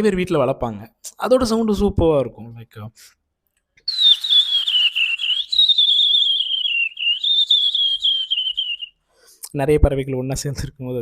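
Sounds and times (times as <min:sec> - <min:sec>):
bird whistling call: 0:03.9 - 0:09.0.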